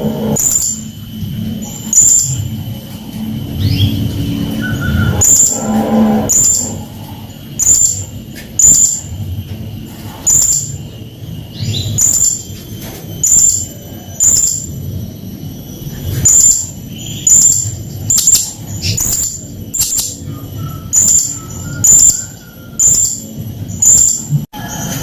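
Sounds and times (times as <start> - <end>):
parrot calling: 3.9 - 9.1, 10.2 - 10.9, 11.6 - 12.6, 13.2 - 14.9, 16.2 - 24.3.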